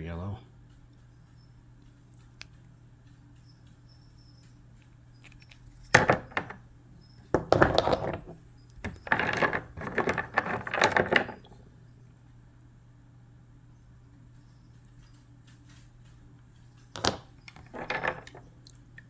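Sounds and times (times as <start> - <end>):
rocks clattering together: 5.8 - 6.6, 7.3 - 11.6, 17.0 - 18.5.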